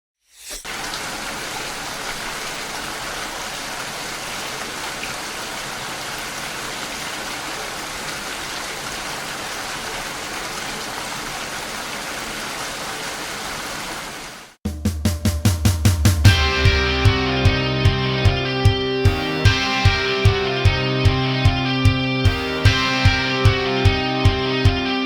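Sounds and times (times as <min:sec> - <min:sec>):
running water: 0:00.4 - 0:14.6
heavy rain: 0:00.6 - 0:14.6.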